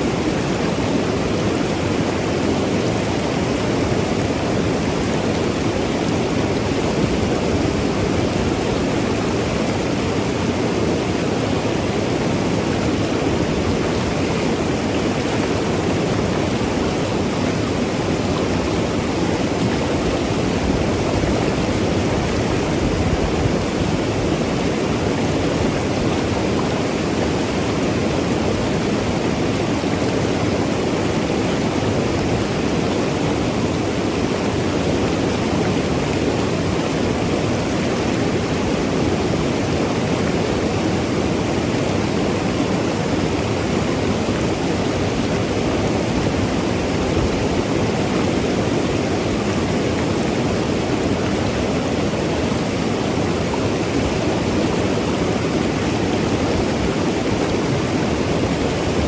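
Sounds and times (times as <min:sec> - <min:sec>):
river flowing over rocks: 0:00.0 - 0:59.0.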